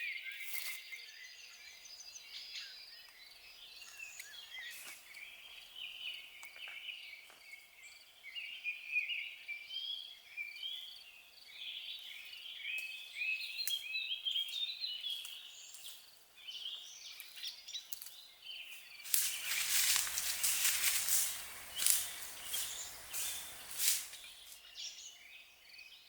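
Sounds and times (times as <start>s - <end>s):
birds chirping and warbling: 16.7s - 25.6s.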